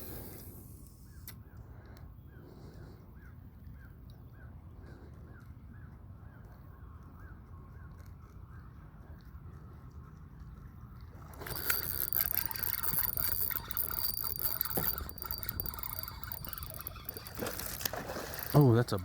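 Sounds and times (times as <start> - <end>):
fishing reel winding line: 11.3 - 19.0.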